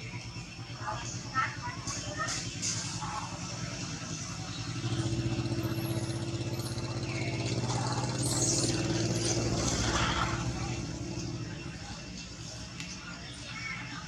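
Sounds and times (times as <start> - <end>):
vehicle engine passing: 1.8 - 12.3.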